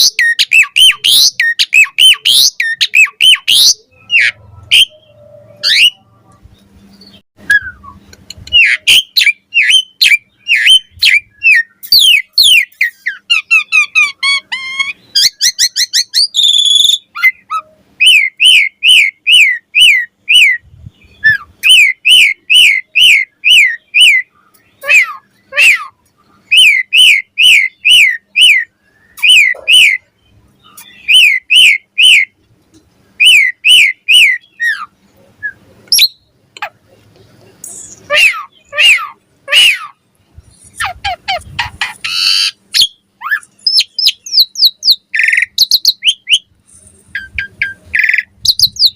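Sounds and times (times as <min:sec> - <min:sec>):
starling whistling and warbling: 0:00.0 - 0:06.4, 0:07.0 - 0:30.1, 0:40.6 - 0:48.9.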